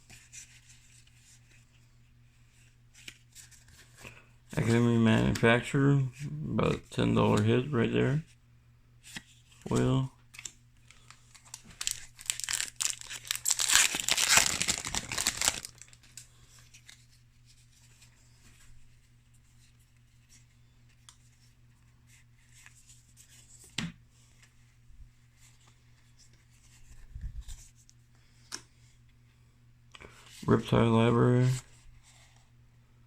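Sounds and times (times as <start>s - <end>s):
cards rustling and clicking: 9.0s - 17.1s
foil wrapper tearing and crinkling: 10.9s - 16.2s.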